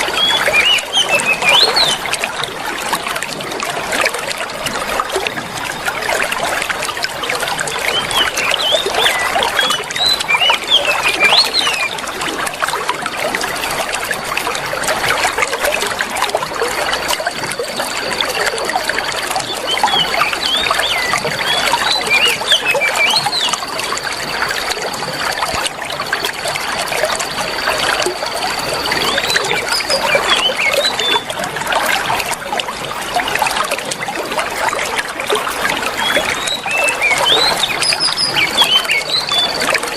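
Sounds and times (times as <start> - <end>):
birds chirping: 0.0 - 2.4, 7.6 - 12.0, 19.3 - 23.7, 28.2 - 31.3, 35.9 - 39.9
water trickling: 0.0 - 39.9.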